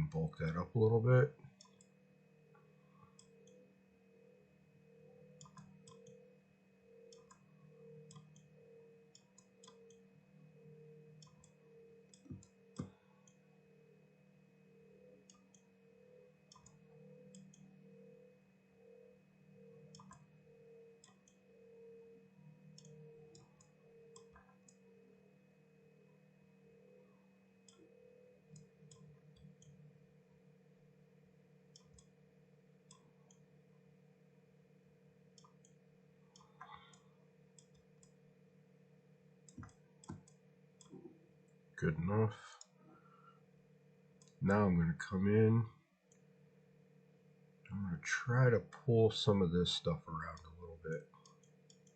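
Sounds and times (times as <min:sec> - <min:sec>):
low electrical hum: 0:00.0 - 0:51.9
faint computer mouse clicks: 0:05.4 - 0:06.2, 0:07.1 - 0:07.4, 0:08.1 - 0:08.5, 0:09.1 - 0:10.0, 0:11.2 - 0:13.4, 0:16.5 - 0:17.6, 0:19.9 - 0:20.3, 0:31.7 - 0:32.1, 0:35.4 - 0:35.8, 0:39.5 - 0:41.1.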